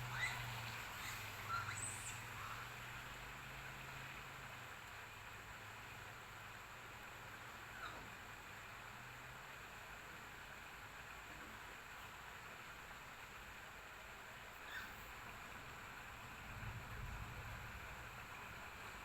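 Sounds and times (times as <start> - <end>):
faint rain hiss: 0.0 - 19.0
distant thunder rumble: 16.1 - 18.9.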